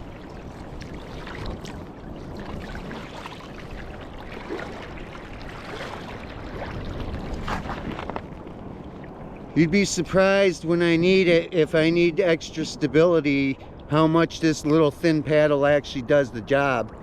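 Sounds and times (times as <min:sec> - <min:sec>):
water sloshing around kayak: 0:00.0 - 0:09.6
paddle dripping: 0:00.0 - 0:09.7
brief splashes: 0:00.8 - 0:08.3.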